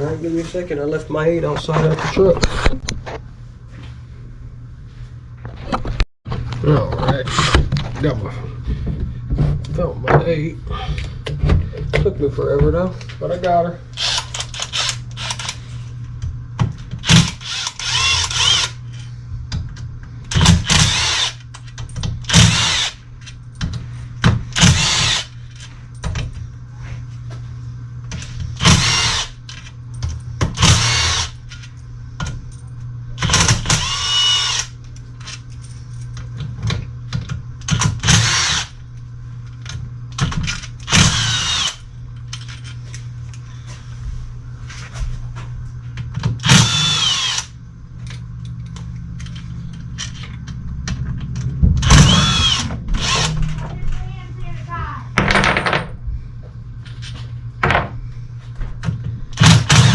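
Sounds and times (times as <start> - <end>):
power drill running bolts: 13.9 - 15.6, 17.0 - 19.0, 20.3 - 23.0, 24.5 - 25.4, 28.6 - 29.7, 30.5 - 31.7, 33.2 - 35.4, 37.7 - 38.8, 40.7 - 41.8, 46.4 - 47.6, 51.8 - 53.6, 59.4 - 59.9.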